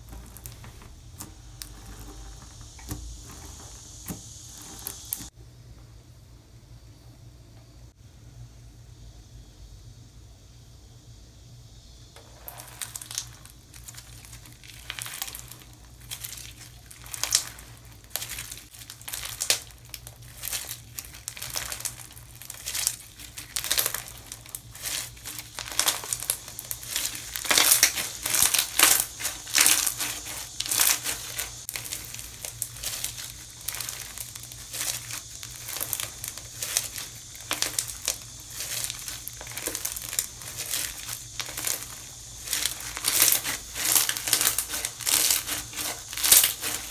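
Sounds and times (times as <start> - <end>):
slime squeezed by hand crackling: 12.3 - 46.9.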